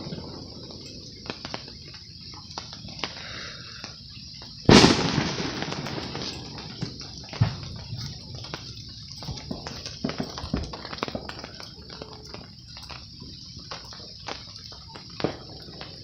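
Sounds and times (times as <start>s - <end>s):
small firework pops: 0.0s - 16.0s
loud firework bang: 4.7s - 8.0s.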